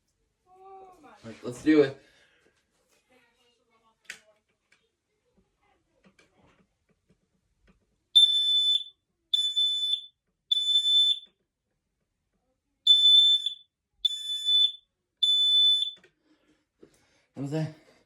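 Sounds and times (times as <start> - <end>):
smoke alarm beeping: 8.2 - 11.3, 12.9 - 16.0.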